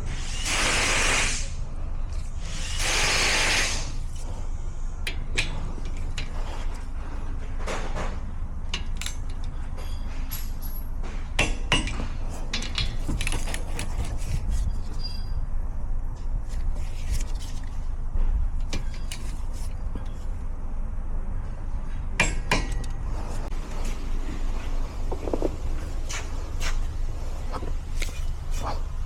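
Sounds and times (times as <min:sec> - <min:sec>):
hissing bursts: 0:00.1 - 0:01.6, 0:02.4 - 0:04.1
metallic clinks of tools: 0:08.8 - 0:13.7
steady low rumble: 0:12.0 - 0:29.0.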